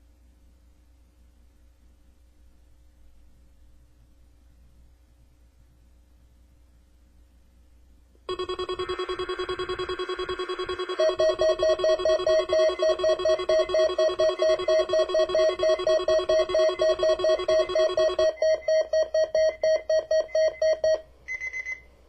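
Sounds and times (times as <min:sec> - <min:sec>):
rapid electronic pulsing beep: 0:08.3 - 0:21.0
steady low electronic tone: 0:08.3 - 0:21.0
short high beeps: 0:08.3 - 0:21.8.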